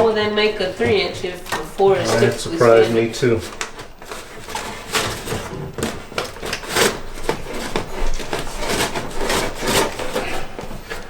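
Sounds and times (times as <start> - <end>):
metal duct scraping and knocking: 0.0 - 11.0.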